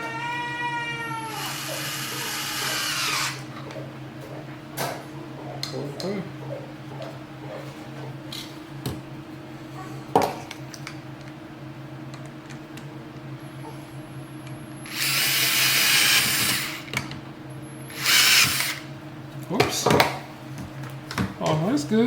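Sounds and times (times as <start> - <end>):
power drill running: 0.0 - 3.8, 14.2 - 17.0, 17.6 - 19.0
faint high whine: 0.0 - 8.2, 10.5 - 19.7
steady low hum: 0.0 - 22.0.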